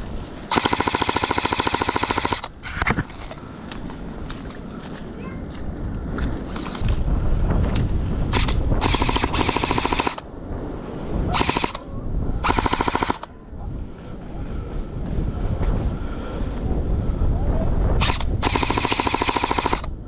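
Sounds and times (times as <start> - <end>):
airsoft gun automatic fire: 0.5 - 2.9, 8.3 - 10.3, 11.3 - 11.8, 12.4 - 13.3, 18.0 - 20.0.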